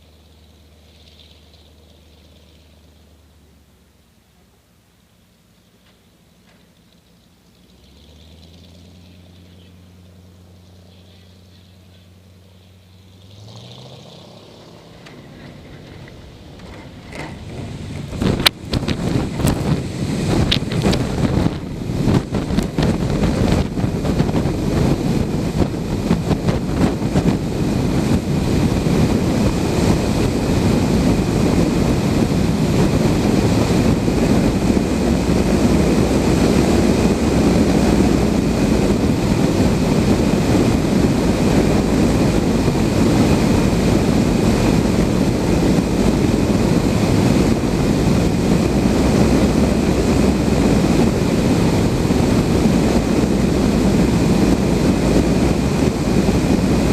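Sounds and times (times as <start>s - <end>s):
airflow rushing: 10.4s - 56.9s
wind buffeting microphone: 15.0s - 56.9s.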